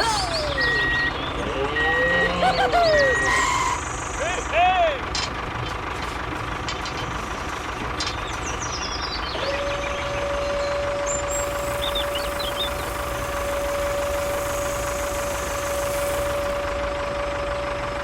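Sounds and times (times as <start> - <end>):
steady whine: 0.0 - 4.6, 9.4 - 18.0
motor rumble: 0.0 - 18.0.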